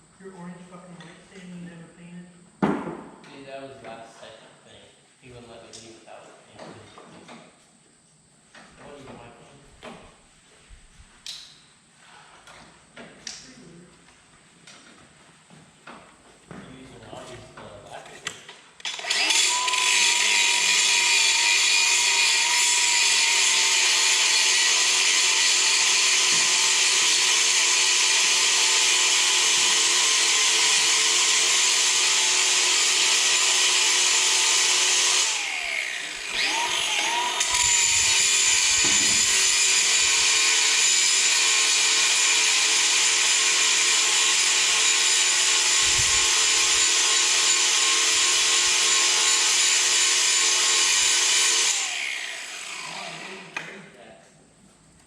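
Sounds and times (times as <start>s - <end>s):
power tool motor running: 18.8s - 53.7s.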